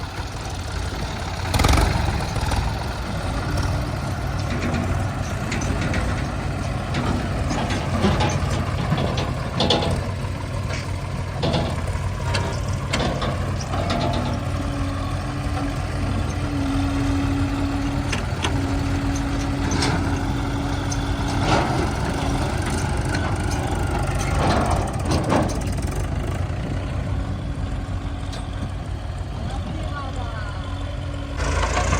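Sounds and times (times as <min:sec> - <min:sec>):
diesel engine running: 0:00.0 - 0:31.9.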